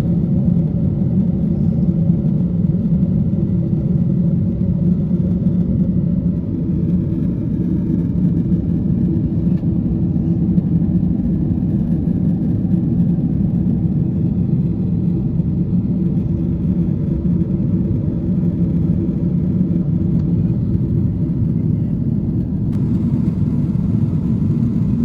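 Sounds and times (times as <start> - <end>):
aircraft cabin engine rumble: 0.0 - 25.0
airflow noise: 22.7 - 25.0.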